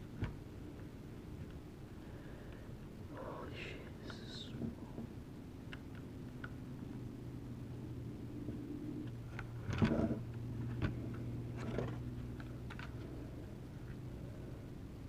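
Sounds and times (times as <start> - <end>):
steady low hum: 0.0 - 15.0
small clicks and taps: 5.7 - 7.0, 9.0 - 13.1.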